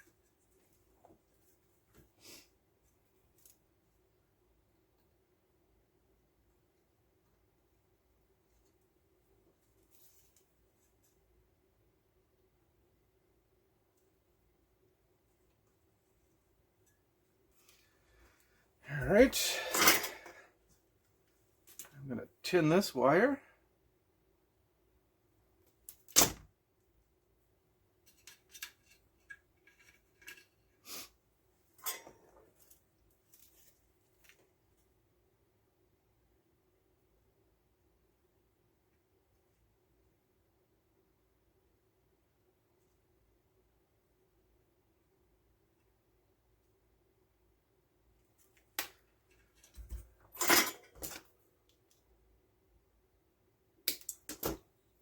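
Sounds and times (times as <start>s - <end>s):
hand tools clicking and clattering: 19.4s - 20.4s
light clicks and taps of tools: 53.9s - 54.6s.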